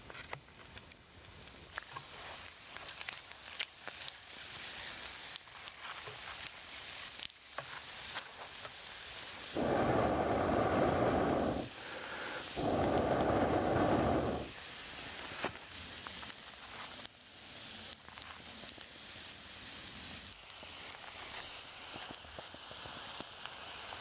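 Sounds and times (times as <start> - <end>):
food sizzling on a hot stone: 0.7 - 24.0
fire crackling: 7.9 - 15.8
loud rushing bursts: 9.6 - 14.5.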